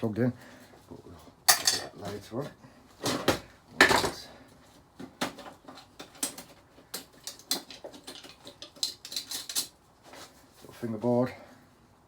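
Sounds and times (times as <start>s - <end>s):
metal and plastic parts rattling: 5.1s - 10.3s.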